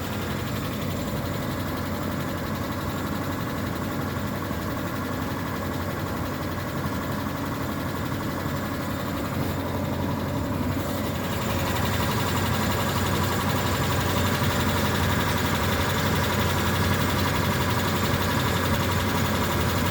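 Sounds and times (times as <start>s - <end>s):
engine idling with a knock: 0.0s - 19.9s.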